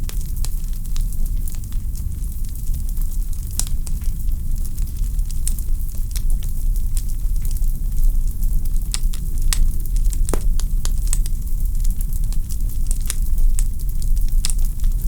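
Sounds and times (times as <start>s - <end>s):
wood fire crackling: 9.5s - 14.6s
fire pops and snaps: 10.3s - 11.3s.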